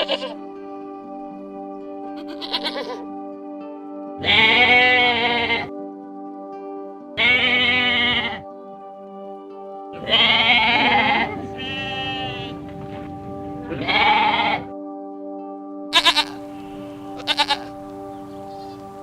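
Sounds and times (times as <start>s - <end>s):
livestock bleating: 0.0s - 0.5s, 2.0s - 3.1s, 4.2s - 5.7s, 7.2s - 8.5s, 10.0s - 12.7s, 13.6s - 14.7s, 15.9s - 19.0s
background music with held chords: 0.0s - 19.0s.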